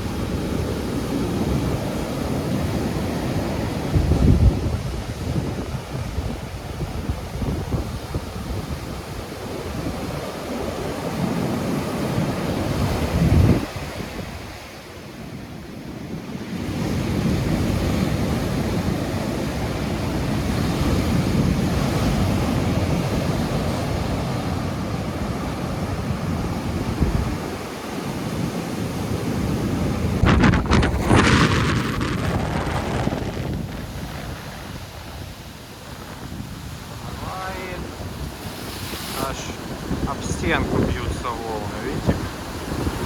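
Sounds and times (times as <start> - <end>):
wind buffeting microphone: 0.0 - 43.0
surf crashing against sea wall: 16.3 - 43.0.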